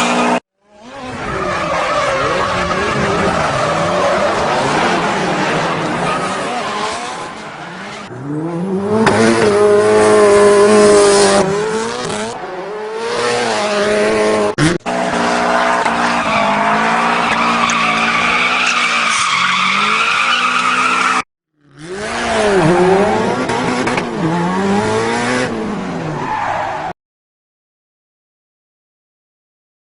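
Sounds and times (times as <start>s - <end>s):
race car engine revving: 0.0s - 26.2s
tyres squealing: 16.0s - 21.2s.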